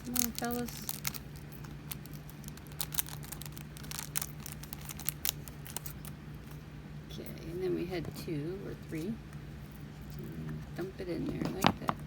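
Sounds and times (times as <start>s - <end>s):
plastic bag crinkling: 0.0s - 6.2s
steady low hum: 0.0s - 12.0s.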